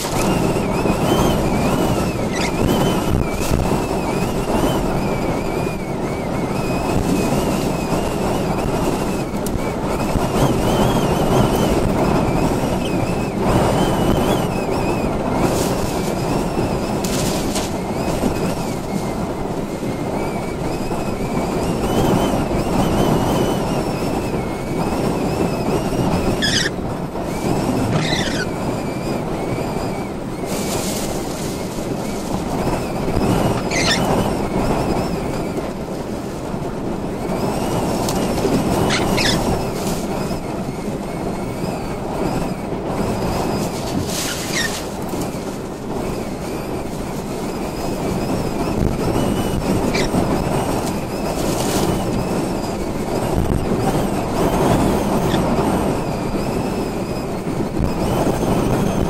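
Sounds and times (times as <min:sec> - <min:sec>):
high falling squeals: 0:00.0 - 0:08.6, 0:20.0 - 0:26.8, 0:27.4 - 0:35.5, 0:38.6 - 0:40.5, 0:41.3 - 0:44.9, 0:46.4 - 0:52.9
high wind whistle: 0:00.0 - 0:59.0
strong gusting wind: 0:00.0 - 0:59.0
wind buffeting microphone: 0:00.0 - 0:59.0.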